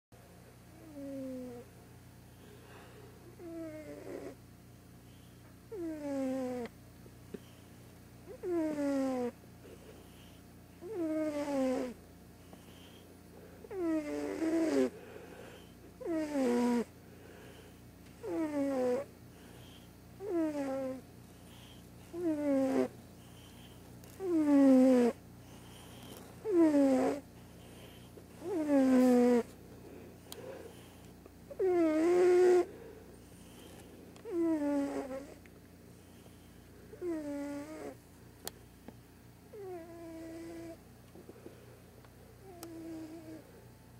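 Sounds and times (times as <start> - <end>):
cat snoring: 0.7 - 1.7, 3.3 - 4.4, 5.1 - 6.7, 8.2 - 29.5, 30.3 - 38.0, 39.5 - 40.8, 42.4 - 43.5.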